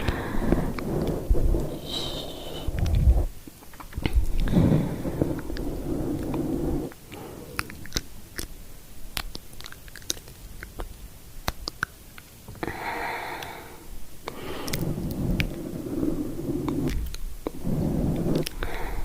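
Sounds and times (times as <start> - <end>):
lip smacks: 0.0 - 4.6, 5.2 - 12.7, 14.2 - 15.6
wet mouth clicks: 0.0 - 4.6, 5.4 - 12.7, 14.2 - 15.6, 16.6 - 17.6, 18.3 - 18.9
soft hiss: 0.0 - 19.0.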